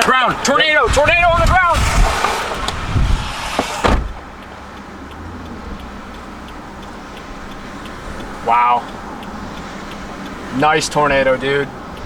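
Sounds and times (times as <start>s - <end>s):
low hum inside car: 0.0s - 4.4s
rushing outdoor noise: 0.0s - 12.0s
car door thudding shut: 0.9s - 4.3s
knocks: 3.6s - 4.3s.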